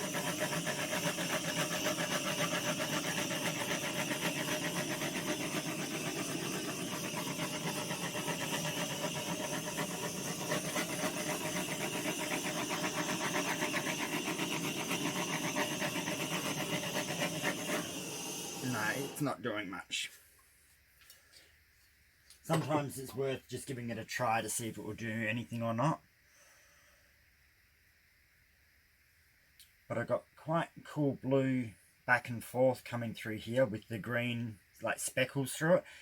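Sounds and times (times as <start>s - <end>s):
blowtorch fluttering hiss: 0.0s - 19.4s.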